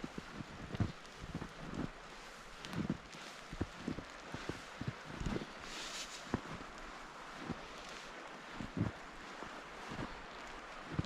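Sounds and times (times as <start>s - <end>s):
footsteps in snow: 0.0s - 11.0s
wind hissing: 5.4s - 10.9s.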